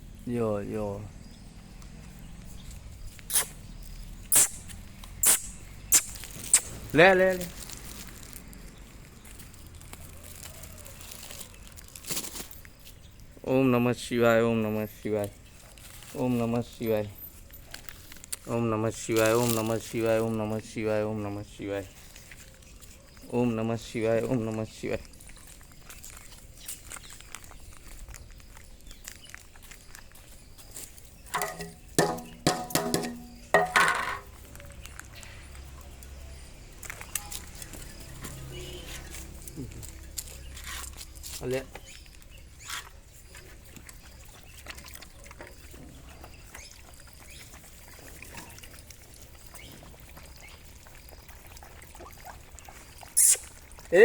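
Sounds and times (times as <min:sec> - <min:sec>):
puppies lapping milk: 0:14.5 - 0:32.0, 0:34.3 - 0:54.0.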